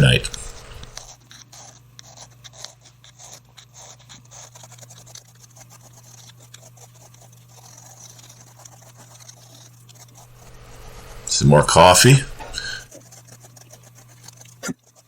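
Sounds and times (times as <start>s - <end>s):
steady low hum: 0.0s - 1.1s, 10.0s - 14.6s
needle file scraping: 0.0s - 15.0s.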